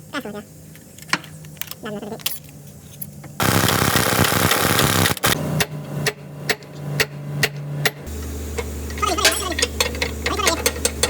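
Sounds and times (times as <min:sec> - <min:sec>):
harsh continuous noise: 0:00.0 - 0:11.0.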